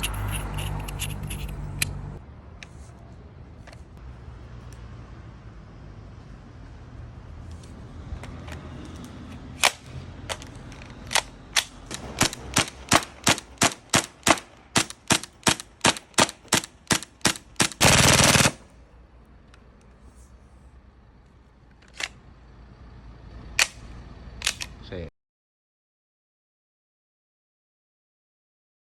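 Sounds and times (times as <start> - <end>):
full-auto airsoft burst: 12.2 - 18.6.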